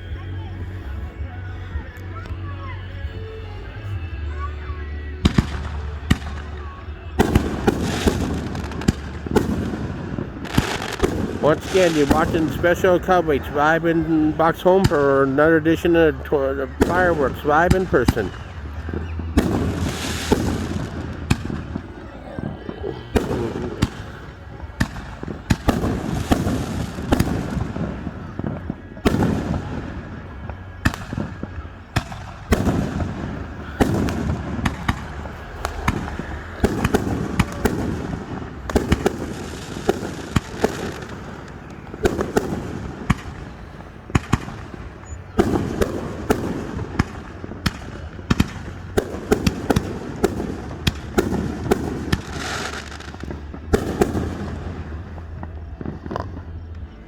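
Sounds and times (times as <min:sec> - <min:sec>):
deep fireworks booms: 0:00.0 - 0:57.0
fireworks cracking: 0:00.0 - 0:57.0.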